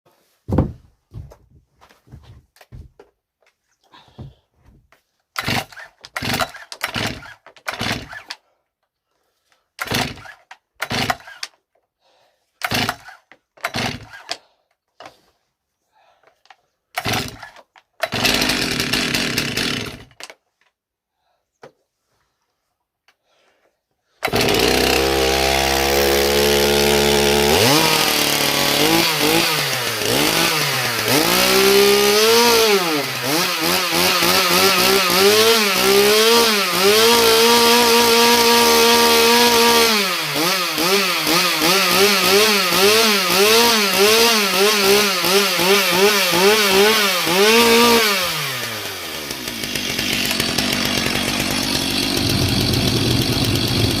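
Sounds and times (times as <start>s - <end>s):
chainsaw engine revving: 5.4s - 8.3s, 9.8s - 11.4s, 12.6s - 14.3s, 17.0s - 20.2s, 24.2s - 54.0s.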